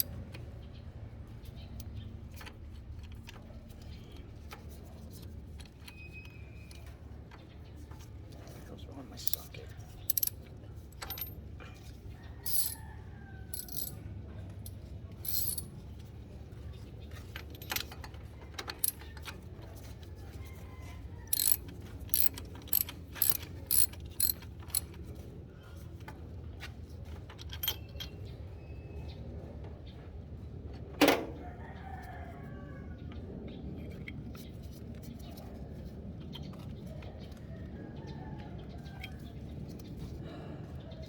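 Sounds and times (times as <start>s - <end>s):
metal tools clinking: 9.2s - 11.4s, 12.4s - 12.8s, 13.5s - 14.0s, 14.6s - 15.8s, 17.1s - 19.4s, 21.3s - 25.0s, 27.4s - 28.2s
socket ratchet clicking: 10.1s - 10.3s, 12.5s - 12.8s, 13.5s - 13.9s, 21.3s - 24.9s.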